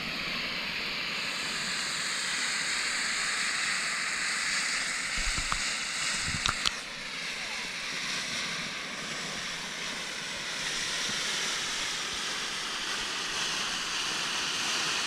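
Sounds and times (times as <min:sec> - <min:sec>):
firework fountain hissing: 0:00.0 - 0:15.0
small pops: 0:05.2 - 0:06.8.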